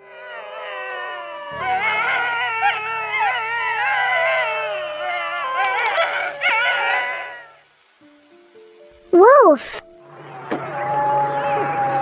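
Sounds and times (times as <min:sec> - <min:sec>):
wolves howling: 0:00.0 - 0:07.7, 0:10.1 - 0:12.0.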